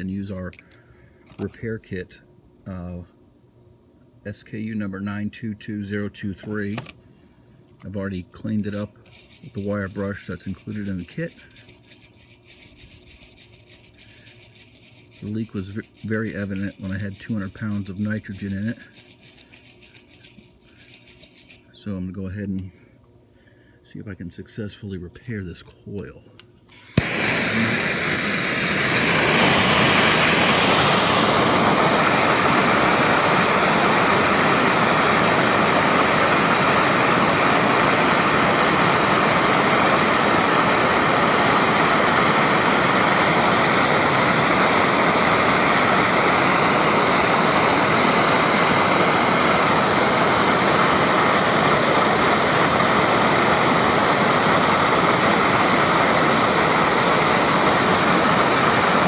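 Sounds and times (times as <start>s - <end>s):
gas torch flame roaring: 26.7s - 59.0s.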